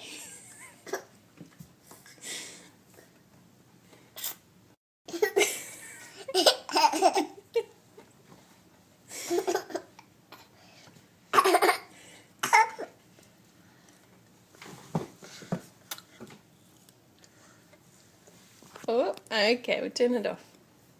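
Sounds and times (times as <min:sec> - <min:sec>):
baby laughing: 0:05.1 - 0:07.7.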